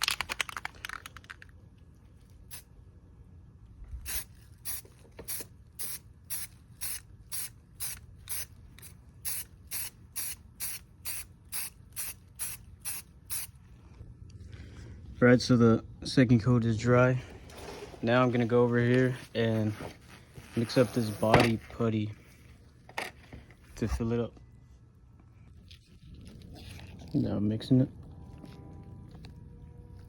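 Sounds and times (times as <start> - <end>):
aerosol spray can bursts: 4.1 - 8.5, 9.2 - 13.5.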